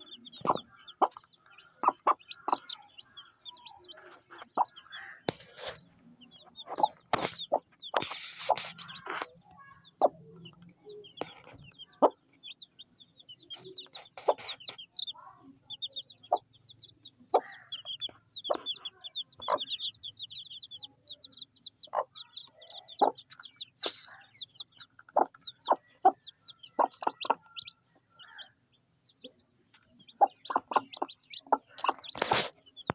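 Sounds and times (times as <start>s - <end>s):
chicks peeping: 0.0s - 32.9s
hen clucking: 0.0s - 32.9s
sharp pecks: 6.7s - 9.4s.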